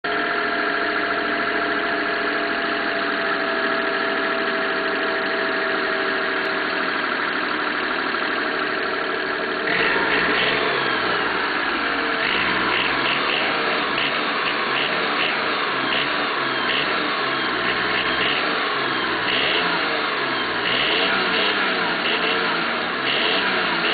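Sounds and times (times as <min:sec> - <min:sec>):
engine running with rattling: 0:00.0 - 0:23.9
sharp engine ticks: 0:12.0 - 0:23.9.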